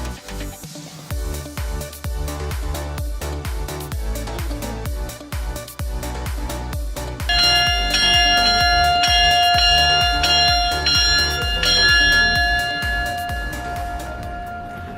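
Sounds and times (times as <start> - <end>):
electronic music with steady beat: 1.1 - 14.9
bell-like ringing tones: 7.3 - 14.9.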